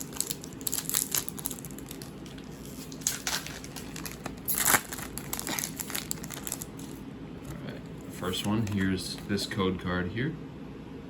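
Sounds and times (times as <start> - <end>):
foil wrapper tearing open: 0.0 - 7.0
foil wrapper crinkling: 0.0 - 9.4.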